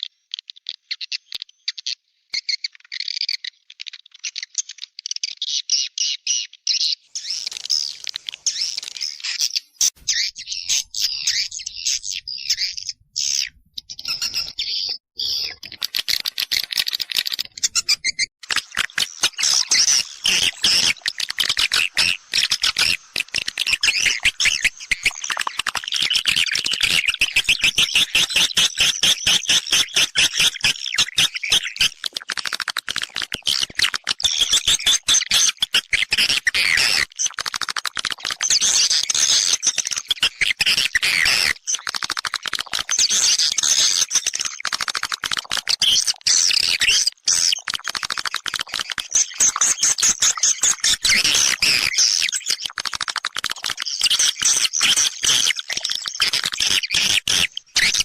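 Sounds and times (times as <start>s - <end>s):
swiftlet chirps and twitters: 7.2s - 31.9s.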